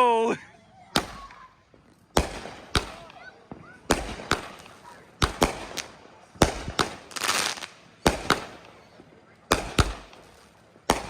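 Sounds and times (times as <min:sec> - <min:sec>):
fireworks bangs: 0:00.8 - 0:11.0
fireworks hissing crackle: 0:00.9 - 0:11.0.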